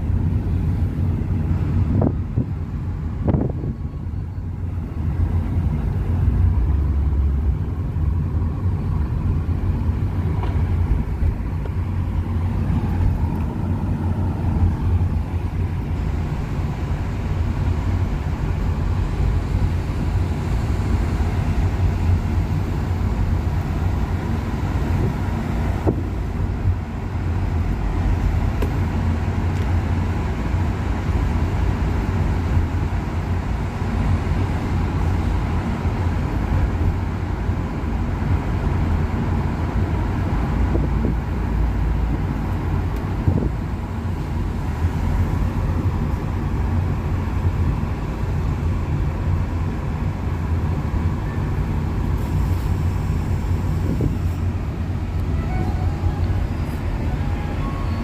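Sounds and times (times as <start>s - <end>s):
vehicle engine rumble: 0.0s - 58.0s.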